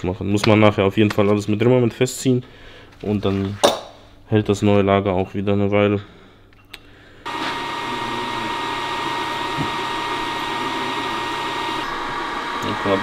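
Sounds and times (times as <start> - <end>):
heat gun blowing with motor whine: 7.3 - 13.0.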